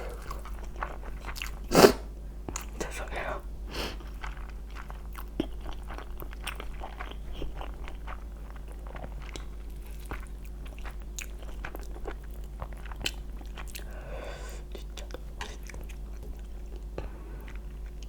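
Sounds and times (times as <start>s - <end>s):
person chewing and biting food: 0.0s - 2.7s
steady low hum: 0.0s - 18.0s.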